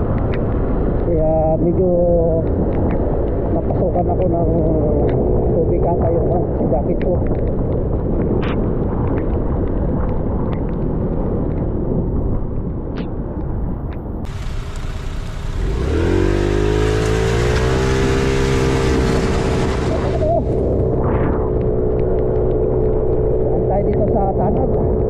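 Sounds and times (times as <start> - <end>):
wind and road noise: 0.0 - 25.0
scooter engine revving up: 14.3 - 21.0.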